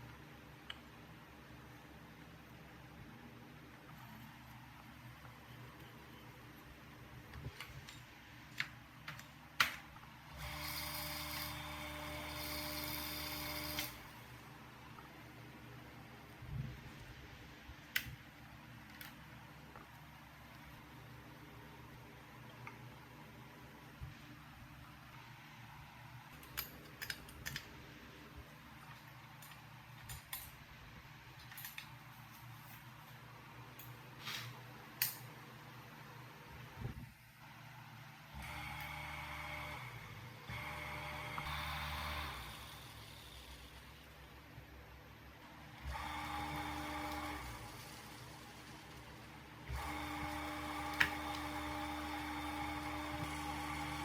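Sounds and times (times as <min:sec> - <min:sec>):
small electric motor humming: 0:10.4 - 0:14.1, 0:49.7 - 0:54.0.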